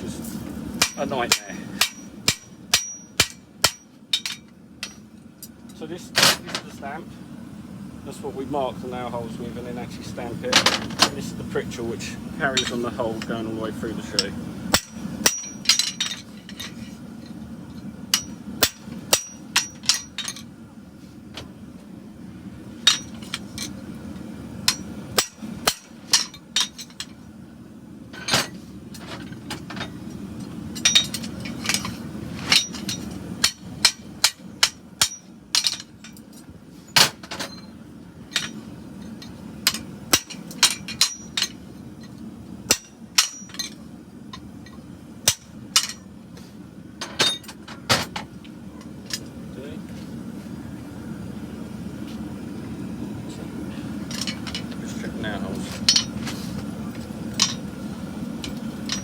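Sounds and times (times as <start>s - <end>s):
hammer striking metal on anvil: 0.8s - 5.0s, 14.2s - 16.2s, 18.1s - 20.3s, 24.7s - 26.8s, 33.4s - 35.8s, 39.7s - 41.6s, 42.7s - 43.7s.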